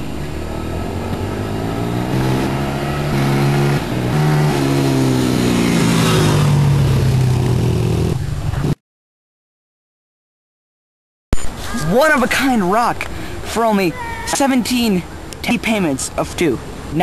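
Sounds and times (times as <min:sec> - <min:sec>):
car engine accelerating: 0:00.0 - 0:08.8.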